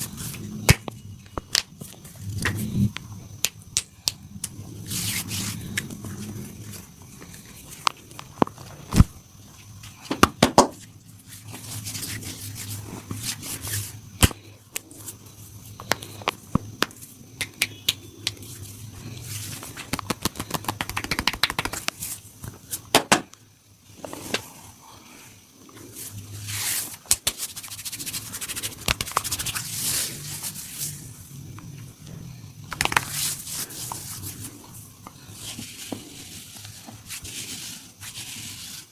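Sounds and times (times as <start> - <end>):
faint steady hum: 0.0 - 38.9
hands slapping skin: 15.8 - 18.4, 19.7 - 22.0, 27.0 - 29.6, 32.7 - 33.4
rapid taps on skin: 15.8 - 18.4, 19.7 - 22.0, 27.1 - 29.6, 32.7 - 33.2
hands rubbing skin: 19.3 - 22.2, 26.0 - 31.0, 32.7 - 34.7.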